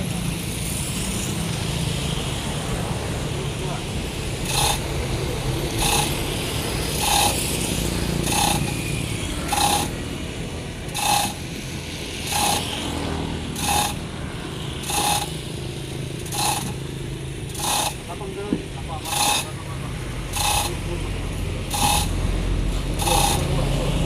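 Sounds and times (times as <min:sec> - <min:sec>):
metal ratchet clicking: 0:04.4 - 0:10.0, 0:10.9 - 0:11.5, 0:12.2 - 0:12.8, 0:13.6 - 0:14.0, 0:14.8 - 0:15.5, 0:16.2 - 0:16.8, 0:17.5 - 0:18.2, 0:19.0 - 0:19.6, 0:20.2 - 0:22.2, 0:22.9 - 0:23.6.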